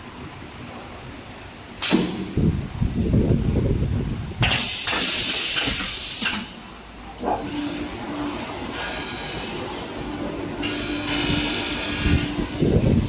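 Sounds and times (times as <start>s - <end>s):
grinding machine hissing and whirring: 7.4s - 13.0s.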